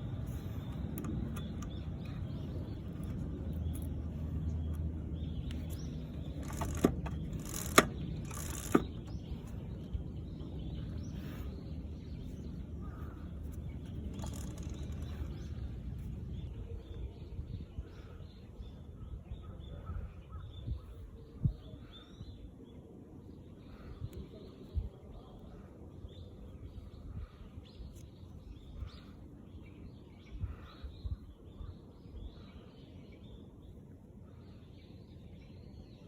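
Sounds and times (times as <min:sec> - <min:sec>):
motorcycle engine rumbling: 0:00.0 - 0:16.9
sharp clicks: 0:00.6 - 0:09.6, 0:13.5 - 0:15.4.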